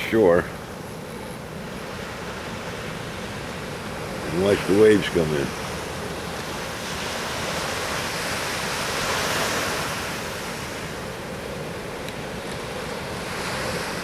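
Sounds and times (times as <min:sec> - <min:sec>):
surf breaking on shore: 0:00.0 - 0:14.0.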